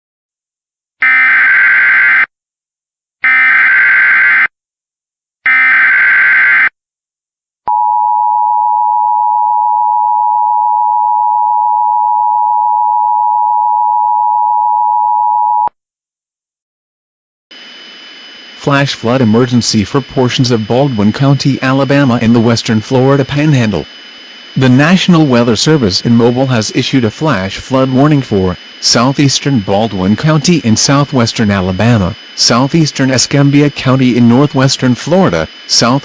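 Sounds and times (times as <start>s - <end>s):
digital data tone bursts: 17.5s - 36.0s.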